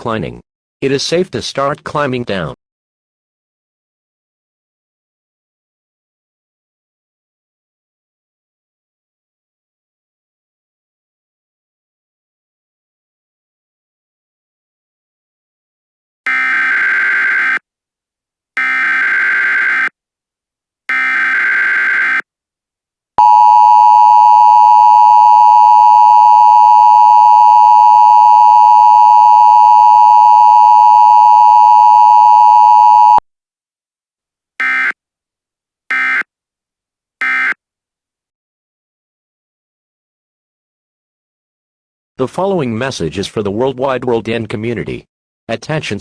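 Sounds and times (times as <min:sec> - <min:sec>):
two-tone attention signal: 0:23.2 - 0:33.2, 0:35.9 - 0:36.2, 0:37.2 - 0:37.6.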